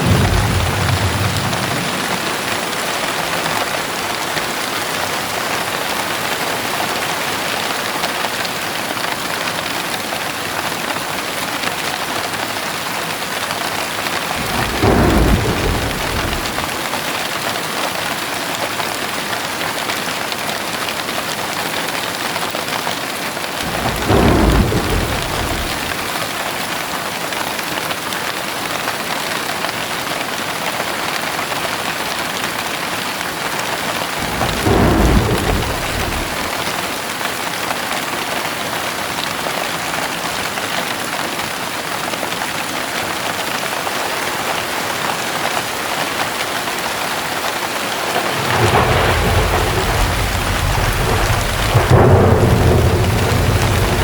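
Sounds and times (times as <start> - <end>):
low thunder rumbles: 0.0 - 4.0, 14.0 - 17.0, 23.6 - 26.3, 33.8 - 37.0, 48.0 - 54.0
heavy rain falling: 0.0 - 54.0.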